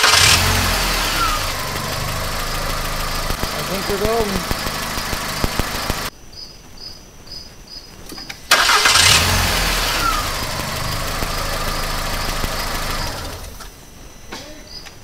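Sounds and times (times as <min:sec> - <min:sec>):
car engine cranking: 0:00.0 - 0:06.1, 0:08.5 - 0:13.7
car engine idling: 0:00.0 - 0:06.1, 0:08.5 - 0:13.7.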